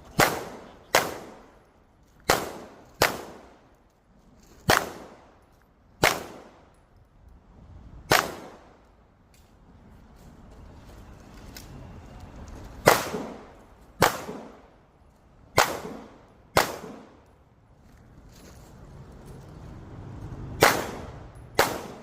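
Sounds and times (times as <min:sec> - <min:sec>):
pistol shots with echo: 0:00.1 - 0:01.6, 0:02.3 - 0:03.6, 0:04.7 - 0:05.2, 0:06.0 - 0:06.6, 0:08.1 - 0:08.7, 0:12.8 - 0:14.6, 0:15.6 - 0:17.2, 0:20.6 - 0:22.0.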